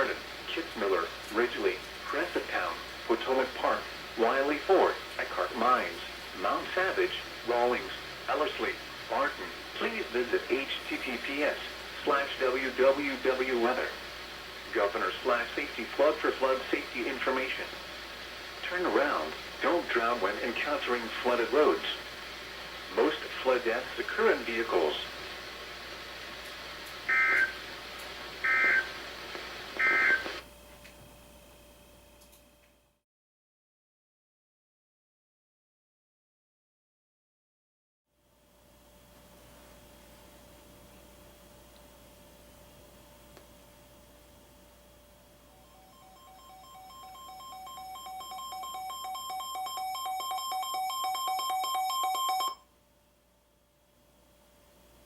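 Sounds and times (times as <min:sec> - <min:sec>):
radio background hiss: 0:00.0 - 0:31.0
warbling two-tone alarm beeps: 0:27.1 - 0:27.6, 0:28.4 - 0:28.9, 0:29.8 - 0:30.3, 0:45.6 - 0:52.6.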